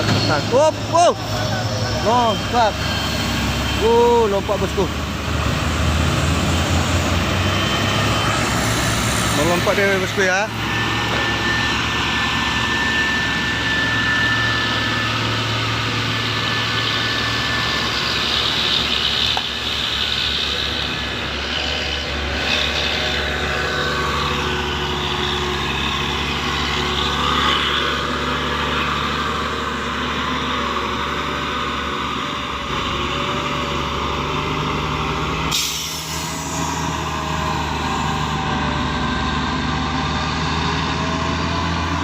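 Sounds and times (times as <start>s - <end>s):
heavy truck engines droning: 0.0s - 42.0s.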